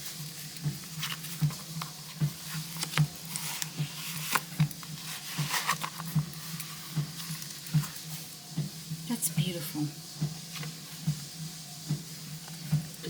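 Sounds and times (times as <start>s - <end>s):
leather cover rustling: 0.9s - 8.0s.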